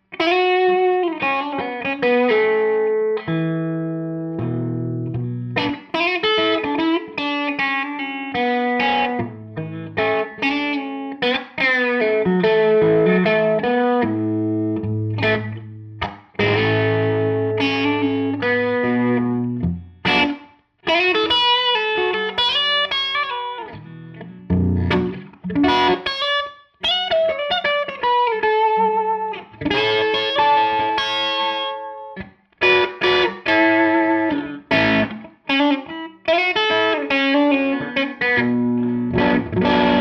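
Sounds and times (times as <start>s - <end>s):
electric guitar notes and chords: 0.0s - 40.0s.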